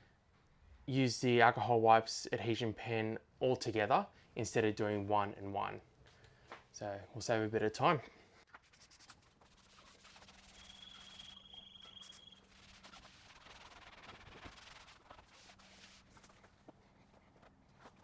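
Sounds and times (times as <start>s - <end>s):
thin high tone: 10.2s - 12.6s.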